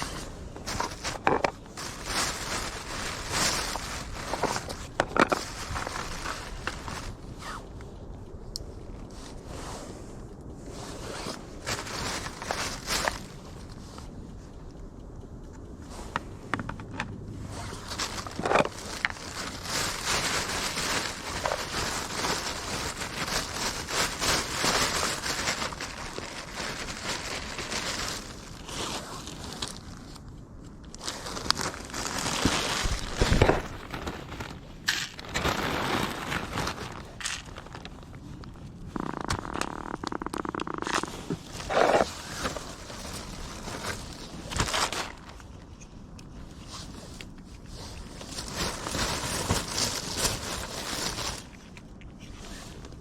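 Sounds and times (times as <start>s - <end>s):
handling noise rustling: 0.0s - 7.8s, 10.7s - 14.1s, 15.9s - 53.0s
sharp clicks and crackles: 36.6s - 46.3s.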